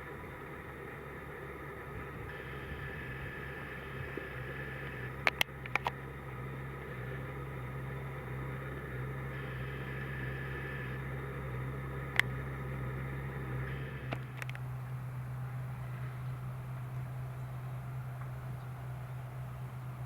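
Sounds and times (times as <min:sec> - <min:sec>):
faint steady whine: 0:00.0 - 0:20.0
machinery engine drone: 0:00.0 - 0:20.0
sharp clicks: 0:02.3 - 0:07.4, 0:12.0 - 0:12.8, 0:13.5 - 0:15.0.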